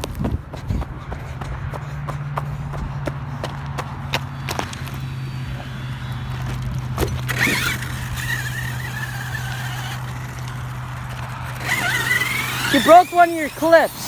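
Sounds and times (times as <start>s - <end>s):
electric motor whining: 3.9s - 14.0s.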